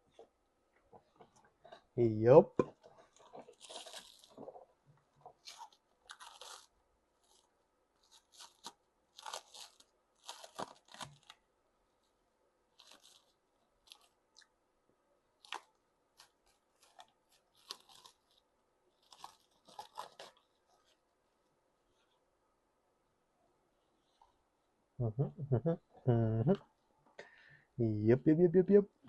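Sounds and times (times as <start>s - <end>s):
person chewing crunchy food: 3.0s - 4.4s, 15.4s - 18.4s, 19.0s - 20.4s.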